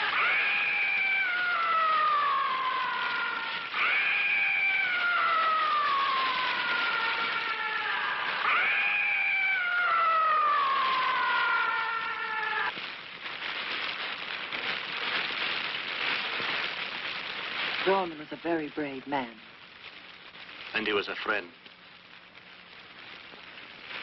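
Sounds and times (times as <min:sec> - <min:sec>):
monster shrieking cry: 0:00.0 - 0:12.7
crackling hiss: 0:00.0 - 0:24.0.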